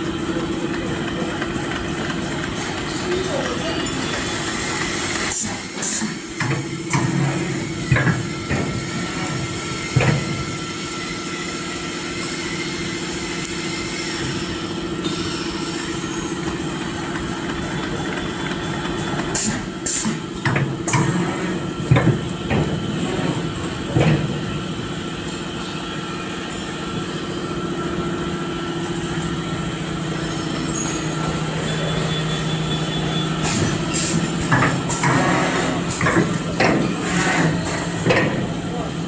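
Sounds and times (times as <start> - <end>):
machine humming: 0.0 - 39.0
machine clacks and knocks: 0.4 - 10.7, 16.4 - 24.7, 33.4 - 39.0.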